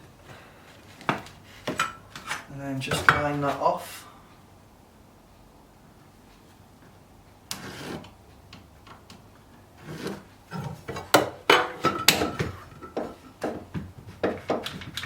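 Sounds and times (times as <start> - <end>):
wood scraping: 7.5 - 8.2, 9.0 - 15.0
wooden knocks and clatters: 8.8 - 15.0.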